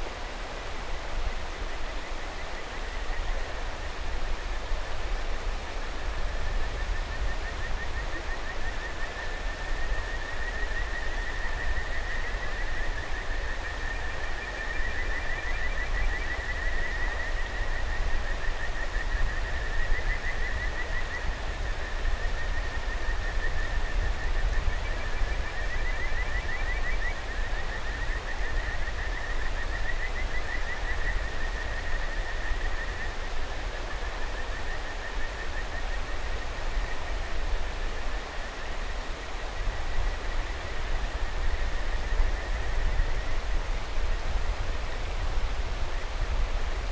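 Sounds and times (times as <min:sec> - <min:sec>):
frogs trilling in chorus: 0:06.8 - 0:37.3.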